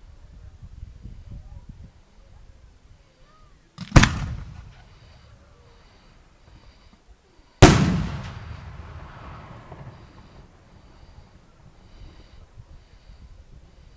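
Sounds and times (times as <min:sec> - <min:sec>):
firework bursts with echo: 0:03.8 - 0:05.5, 0:07.6 - 0:12.2.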